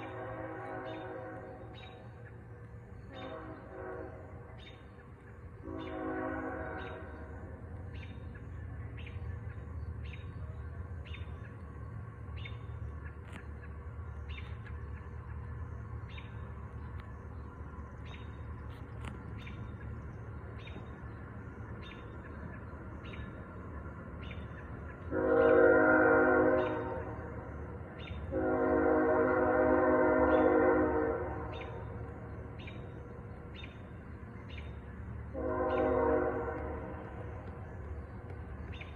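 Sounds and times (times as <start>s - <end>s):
train horn chord: 0.0s - 1.9s, 3.1s - 4.6s, 5.6s - 7.5s, 25.0s - 27.5s, 28.3s - 32.0s, 35.3s - 37.5s
distant train rumbling: 0.0s - 38.9s.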